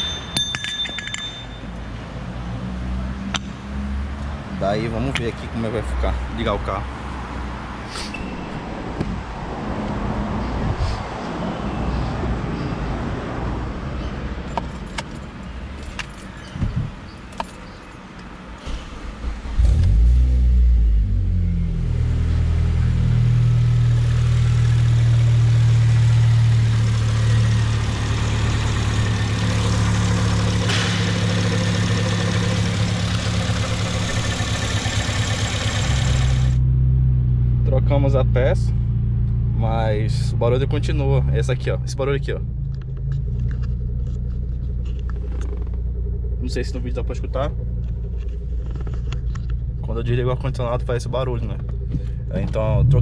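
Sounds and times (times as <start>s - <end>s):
car engine starting and idling: 18.3s - 38.0s, 38.8s - 53.0s.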